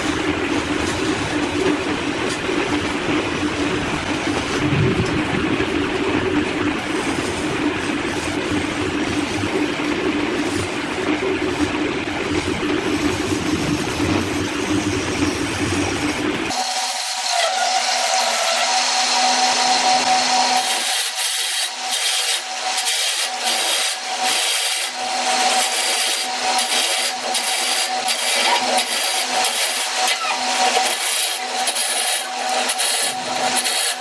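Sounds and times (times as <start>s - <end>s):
low rumbling noise: 0.0s - 16.5s
steady machine hum: 0.0s - 34.0s
wood being rasped: 16.5s - 34.0s.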